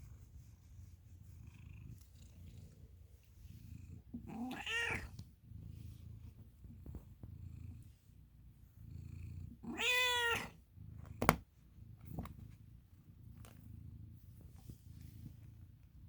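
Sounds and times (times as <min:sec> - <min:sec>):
cat purring: 0:00.0 - 0:16.0
cat meowing: 0:04.3 - 0:05.1, 0:09.6 - 0:10.6.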